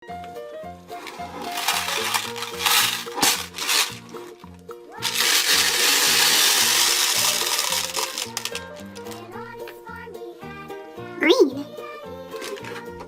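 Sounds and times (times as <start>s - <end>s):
cheerful background music: 0.0s - 13.0s
toy blender whirring and rattling: 0.9s - 4.4s, 5.0s - 9.4s, 12.3s - 13.0s.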